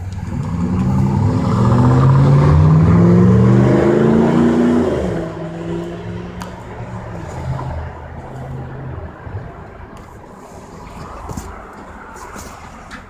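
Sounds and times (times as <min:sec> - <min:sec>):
vehicle engine revving: 0:00.0 - 0:09.4.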